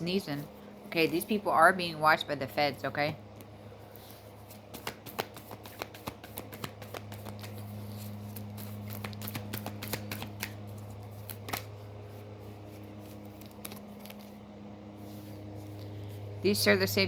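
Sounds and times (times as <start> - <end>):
steady low hum: 0.0 - 17.0
cards being shuffled: 3.9 - 16.0.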